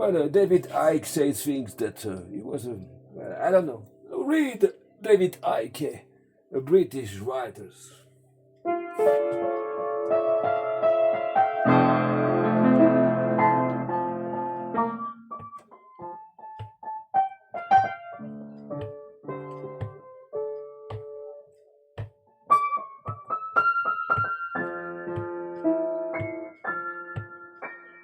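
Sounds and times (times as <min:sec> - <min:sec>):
solo piano keyboard playing: 0:08.6 - 0:28.0.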